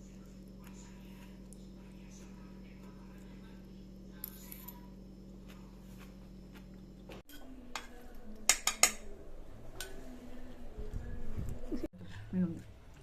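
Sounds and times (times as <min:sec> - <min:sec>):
low steady hum: 0:00.0 - 0:13.0
cutlery clinking against a dish: 0:07.3 - 0:09.1.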